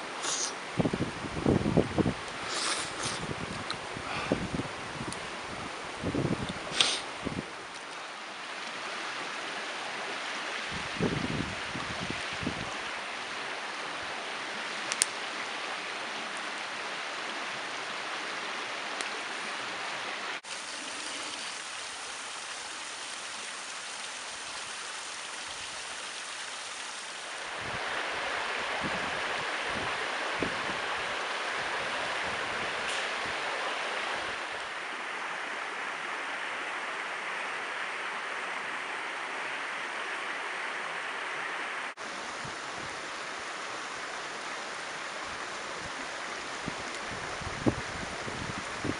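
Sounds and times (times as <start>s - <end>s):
running water rushing: 0.0s - 48.9s
sharp snaps: 6.7s - 7.1s, 14.8s - 15.2s.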